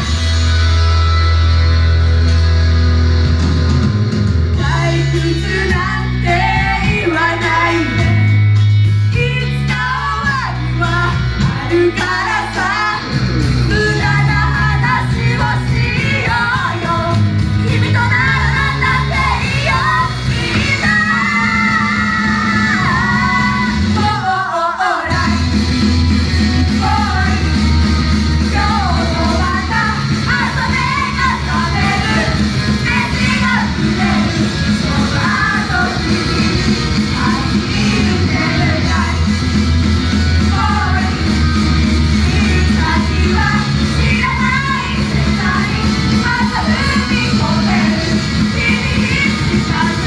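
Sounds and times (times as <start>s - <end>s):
driving drum beat: 0.0s - 24.2s, 25.1s - 50.0s
heavy bass line: 0.0s - 24.3s, 25.1s - 50.0s
live rock band playing: 0.0s - 24.4s, 25.1s - 50.0s
female voices singing: 4.6s - 8.2s, 9.1s - 25.5s, 26.7s - 27.6s, 28.4s - 39.4s, 40.4s - 50.0s
person singing: 42.1s - 50.0s.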